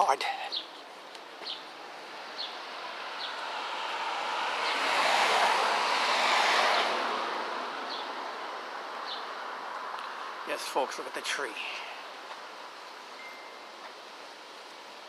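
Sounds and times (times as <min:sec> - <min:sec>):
car passing by: 0:01.7 - 0:10.4.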